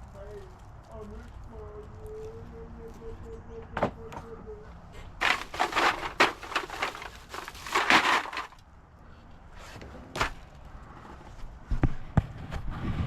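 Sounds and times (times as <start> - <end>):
objects crunching and rattling: 5.2 - 8.6.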